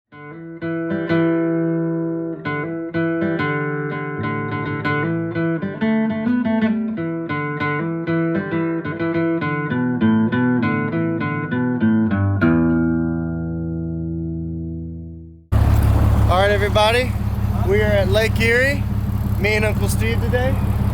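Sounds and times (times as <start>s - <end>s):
plucked guitar tune: 0.1s - 19.4s.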